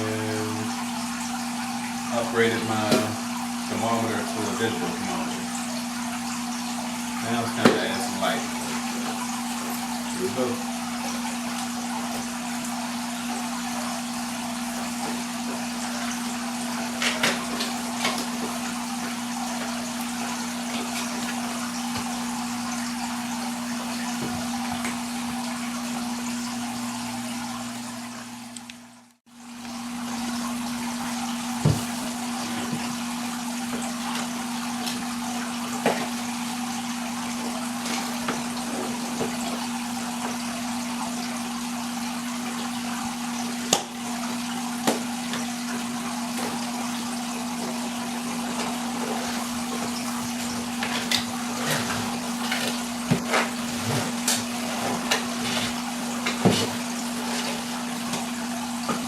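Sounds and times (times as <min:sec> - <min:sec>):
circulating water rushing: 0:00.0 - 0:59.0
pump hum: 0:00.0 - 0:59.0.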